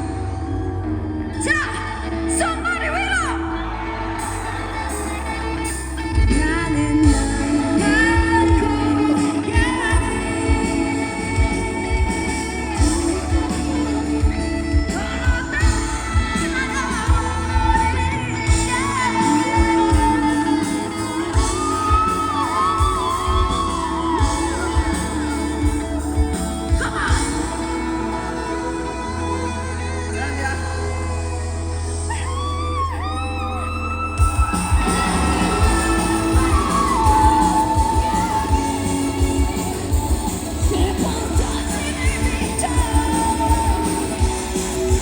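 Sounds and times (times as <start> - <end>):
person singing lead vocal: 0.0 - 45.0
rock band playing: 1.9 - 30.2, 32.5 - 45.0
steady drum beat: 4.2 - 27.7, 34.2 - 45.0.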